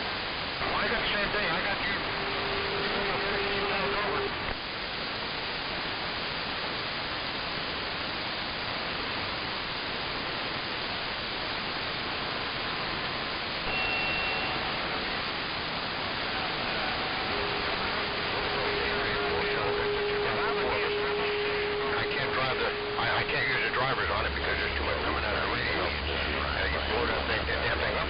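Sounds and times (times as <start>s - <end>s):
hum: 0.0s - 28.0s
radio static hiss: 0.0s - 28.0s
faint voice on radio: 0.6s - 4.4s, 16.2s - 28.0s
brief high whistle: 13.7s - 14.7s.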